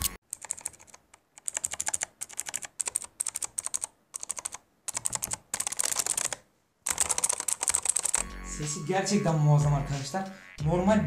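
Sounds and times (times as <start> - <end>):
clicky keyboard typing: 0.0 - 8.3.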